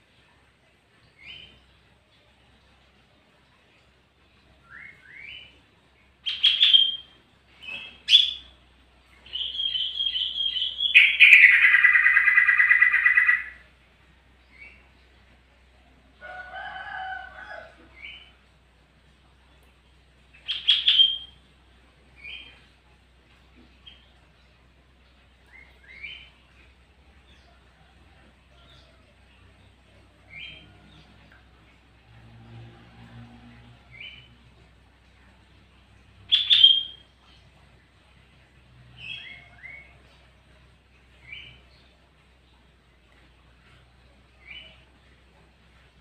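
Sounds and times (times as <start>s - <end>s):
bulbul singing: 6.2s - 15.1s, 20.3s - 22.6s, 36.2s - 37.6s
bird harsh trill: 9.4s - 13.6s.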